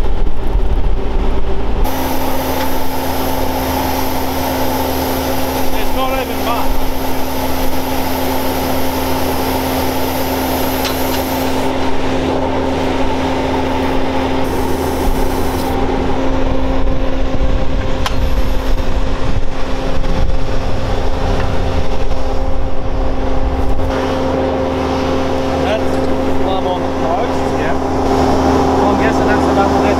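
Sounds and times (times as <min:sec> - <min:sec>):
skid steer engine running: 0:00.0 - 0:29.9.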